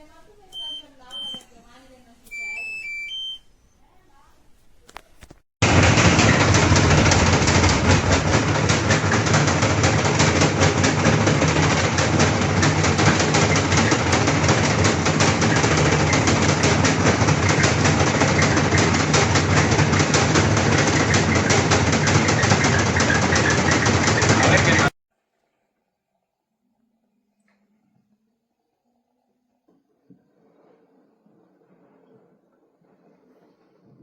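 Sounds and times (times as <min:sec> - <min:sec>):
machine rattling over low hum: 0:05.6 - 0:25.0.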